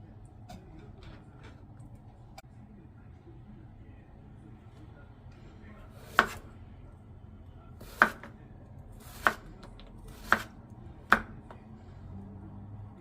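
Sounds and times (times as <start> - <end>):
knife chopping on cutting board: 6.0 - 6.5, 7.8 - 8.4, 9.0 - 11.6.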